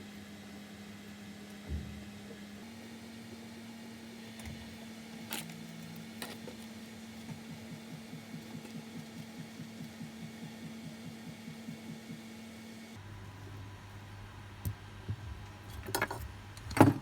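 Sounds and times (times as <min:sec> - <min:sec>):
low electrical hum: 0:00.0 - 0:17.0
soft regular pulsing: 0:04.0 - 0:14.4.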